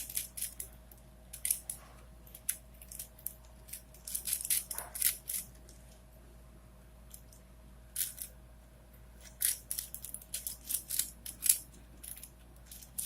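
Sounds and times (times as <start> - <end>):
puzzle cube being twisted: 0.0 - 0.7, 1.3 - 5.6, 9.2 - 13.0.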